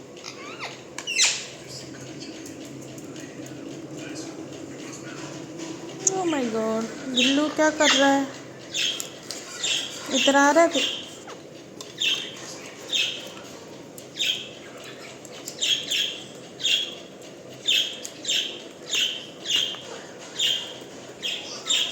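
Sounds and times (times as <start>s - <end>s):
parrot chirping: 0.2s - 2.4s, 6.2s - 13.4s, 14.1s - 21.9s.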